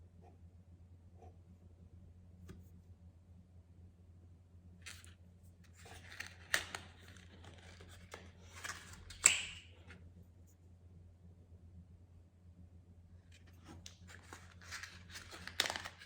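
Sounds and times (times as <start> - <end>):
steady low hum: 0.0 - 16.0
paper rustling and crinkling: 5.7 - 9.3, 13.4 - 16.0.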